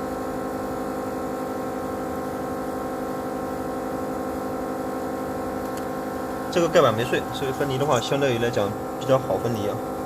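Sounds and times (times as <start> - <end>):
electrical hum: 0.0 - 10.0.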